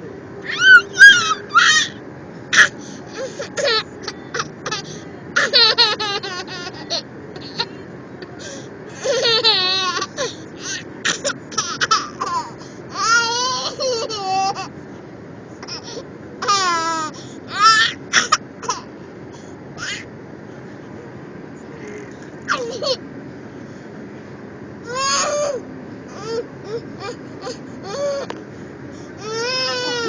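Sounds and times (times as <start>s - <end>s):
toddler laughing: 2.6s - 7.8s, 8.4s - 14.7s, 22.5s - 23.0s, 29.2s - 30.0s.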